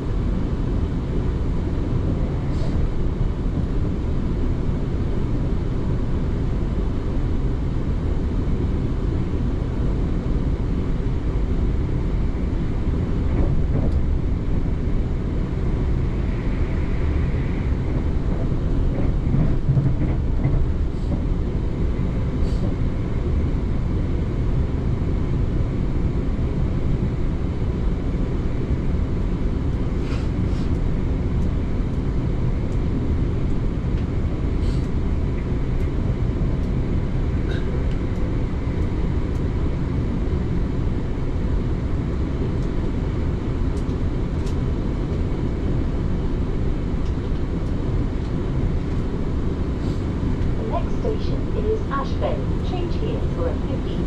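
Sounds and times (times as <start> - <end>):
train wheels rumbling on rails: 0.0 - 7.2, 11.7 - 54.0.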